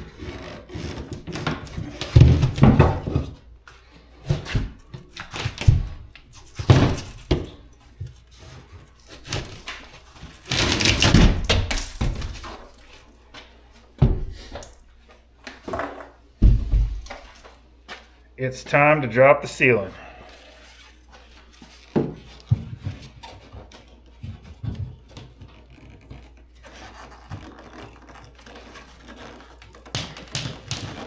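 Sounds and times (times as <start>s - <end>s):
drywall thuds and cracks: 0.7s - 3.5s, 4.2s - 7.7s, 9.1s - 13.0s, 14.0s - 14.8s, 15.6s - 17.4s, 29.6s - 31.0s.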